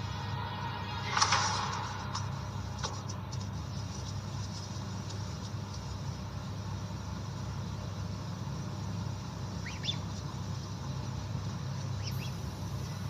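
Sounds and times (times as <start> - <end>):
steady low hum: 0.0 - 13.0
bird chirping: 9.6 - 10.2, 11.9 - 13.0.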